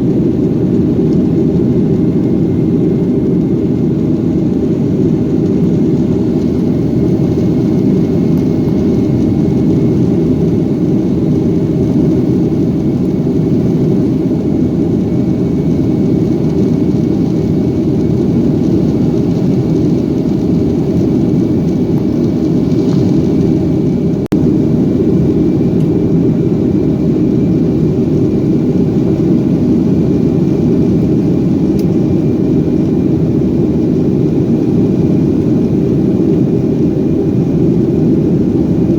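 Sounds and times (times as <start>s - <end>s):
jet engine rumble in cabin: 0.0s - 38.9s.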